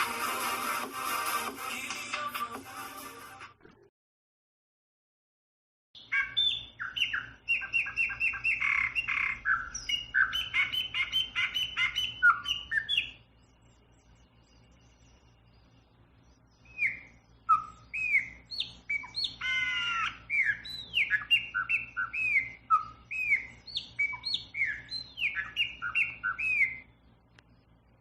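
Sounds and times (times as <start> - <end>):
songbird singing: 6.0 - 28.0.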